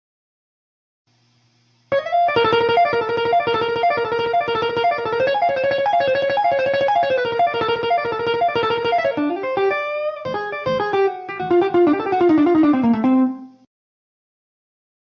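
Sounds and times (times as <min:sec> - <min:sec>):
electric guitar lick: 0:01.9 - 0:13.6.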